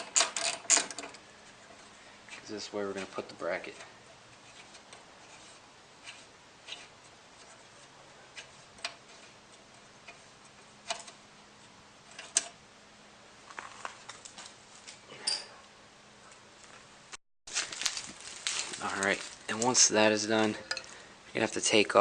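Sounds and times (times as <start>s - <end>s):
hand tools clicking on metal: 0.0s - 3.9s.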